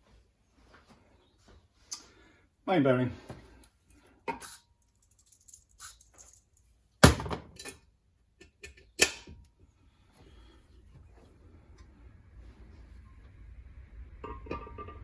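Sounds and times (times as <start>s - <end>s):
metallic ring: 14.2s - 15.0s.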